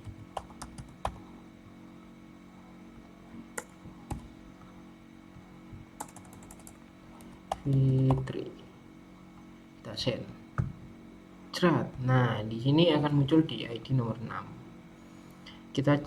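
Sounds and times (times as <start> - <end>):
computer keyboard typing: 0.0 - 1.2, 3.6 - 4.3, 6.0 - 8.3
steady low hum: 0.0 - 16.0.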